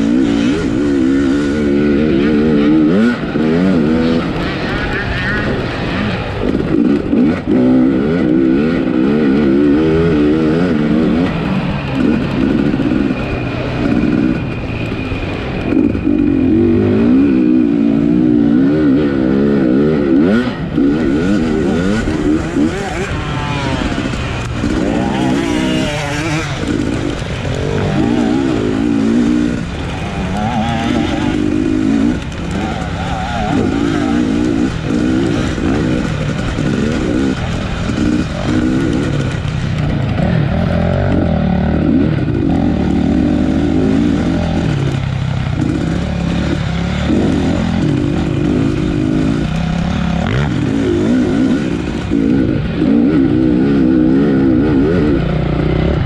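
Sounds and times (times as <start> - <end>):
dirt bike engine revving: 0.0 - 56.0.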